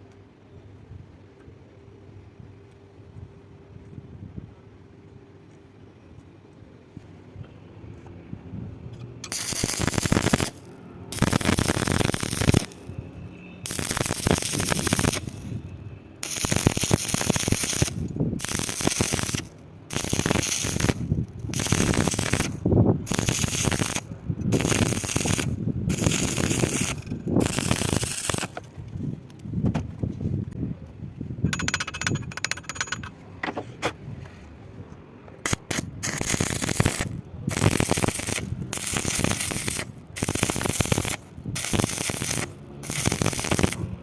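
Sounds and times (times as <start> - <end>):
arc welding crackling: 9.2 - 13.0, 13.6 - 28.7, 35.4 - 44.0.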